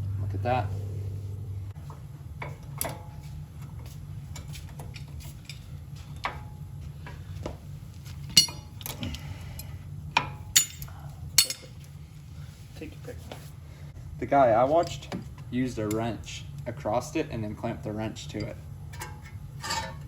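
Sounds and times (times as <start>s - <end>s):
metal tools clinking: 8.3s - 9.1s, 10.6s - 11.8s.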